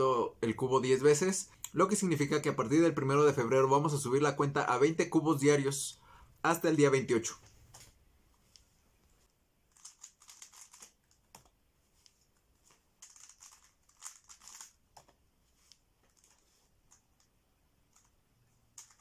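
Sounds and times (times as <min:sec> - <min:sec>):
speedcube clicking turns: 0:09.7 - 0:11.5, 0:13.0 - 0:14.8, 0:18.8 - 0:19.0.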